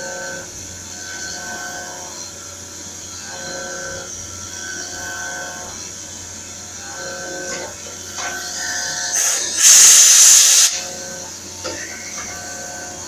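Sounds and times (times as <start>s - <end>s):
milling machine whining: 0.0s - 13.0s
loud hiss: 9.1s - 10.8s.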